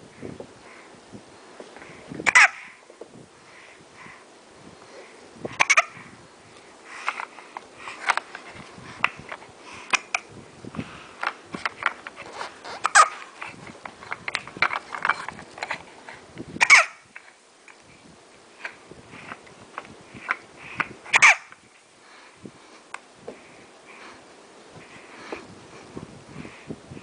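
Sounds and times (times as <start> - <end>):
sharp hiccups: 2.2 - 2.7, 16.6 - 17.0, 21.1 - 21.5.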